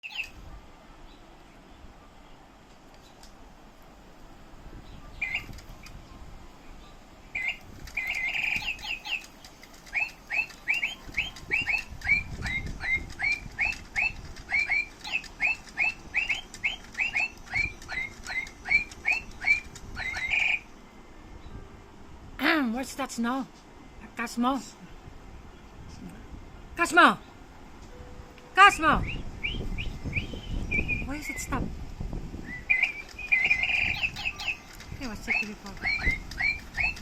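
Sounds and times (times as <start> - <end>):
bright bird-like chirps: 0.0 - 0.4, 4.8 - 20.7, 29.0 - 31.5, 32.4 - 37.0.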